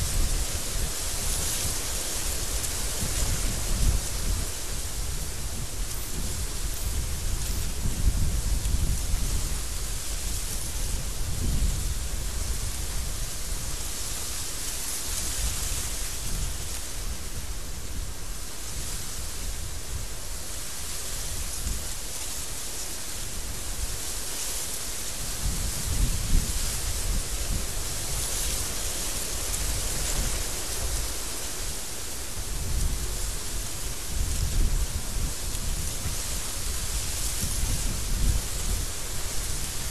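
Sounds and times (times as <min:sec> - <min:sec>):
strong wind rushing: 0:00.0 - 0:13.8
strong wind blowing: 0:00.0 - 0:22.4, 0:25.0 - 0:39.9.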